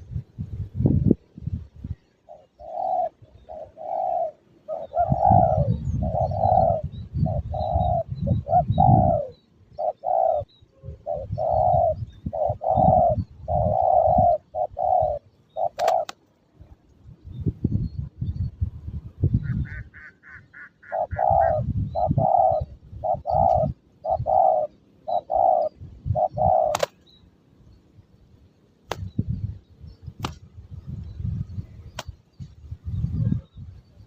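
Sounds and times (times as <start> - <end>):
wind rumbling on microphone: 0.0 - 34.0
doves cooing: 1.9 - 16.3, 19.4 - 27.0
sharp click: 26.7 - 27.0, 28.9 - 29.2, 30.2 - 30.4, 32.0 - 32.2.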